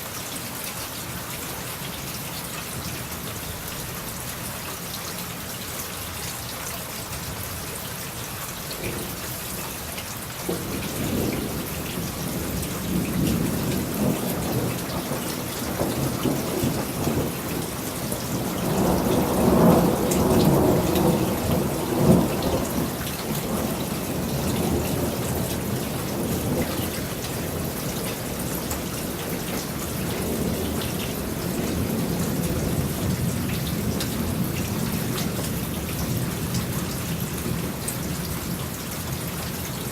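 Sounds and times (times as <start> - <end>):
steady rain: 0.0 - 39.9
thunder rumbling: 10.5 - 38.6.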